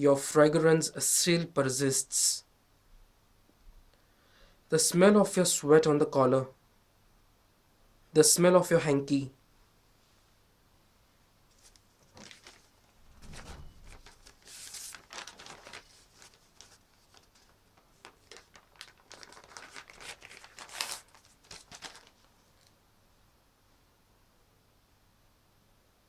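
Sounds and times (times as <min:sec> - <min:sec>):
rustling and crinkling handling noise: 0:11.5 - 0:22.8.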